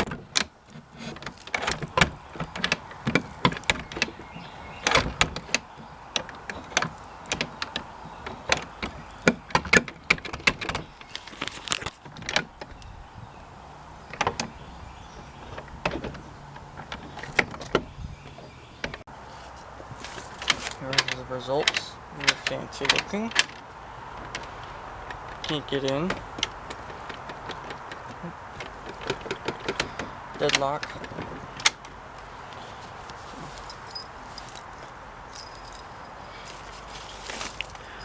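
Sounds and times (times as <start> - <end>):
metal lock parts clinking: 33.6 - 38.0.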